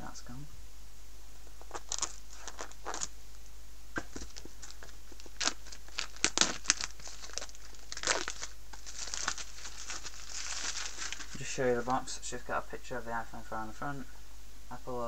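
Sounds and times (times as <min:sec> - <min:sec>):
plastic wrap crinkling and tearing: 0:01.6 - 0:03.1, 0:04.0 - 0:12.1.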